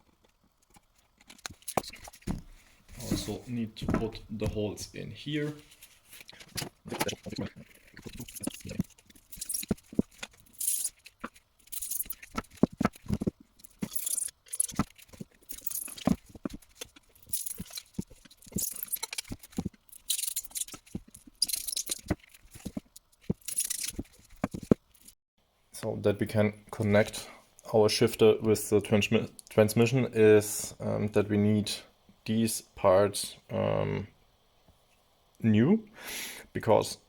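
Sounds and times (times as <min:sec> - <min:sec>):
handling rattles: 0:05.7 - 0:25.2.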